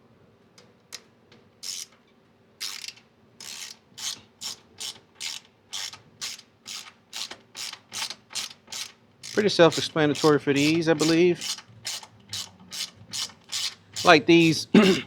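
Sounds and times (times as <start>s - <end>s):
ratchet wrench clicking: 1.6s - 2.0s, 2.6s - 14.6s.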